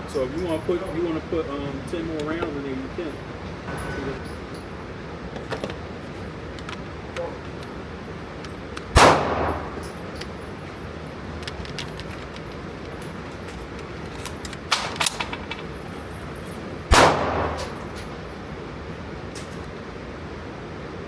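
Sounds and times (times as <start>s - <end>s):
rifle shots: 8.9s - 9.8s, 16.9s - 17.9s.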